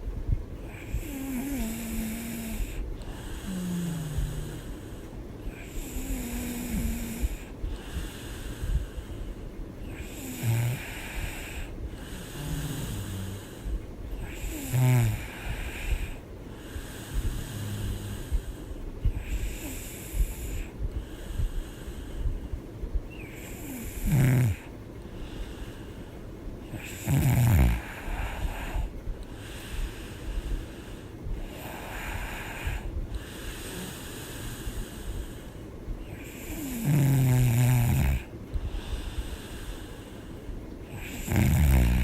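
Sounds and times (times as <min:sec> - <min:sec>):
woman snoring: 0:00.7 - 0:09.0, 0:09.8 - 0:22.0, 0:23.1 - 0:24.7, 0:26.7 - 0:30.3, 0:31.4 - 0:40.2, 0:40.8 - 0:42.0.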